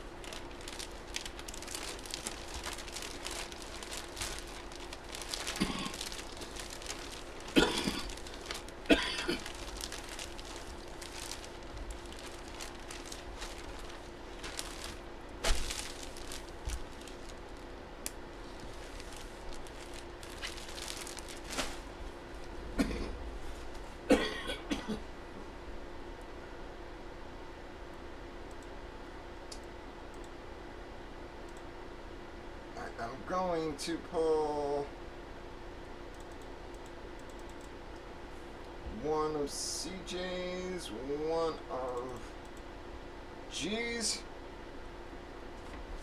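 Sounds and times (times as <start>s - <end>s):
man coughing: 5.6s - 6.0s, 7.5s - 8.2s, 8.9s - 9.5s, 22.8s - 23.2s, 24.1s - 25.0s.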